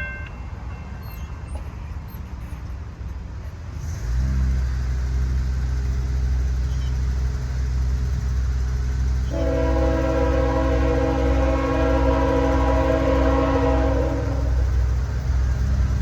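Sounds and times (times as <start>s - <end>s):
locomotive engine drone: 0.0s - 16.0s
locomotive air horn chord: 9.3s - 14.9s.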